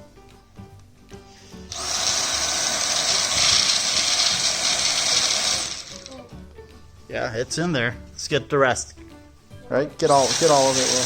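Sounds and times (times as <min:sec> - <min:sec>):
handheld vacuum whirring: 0:01.7 - 0:06.2, 0:10.1 - 0:11.0.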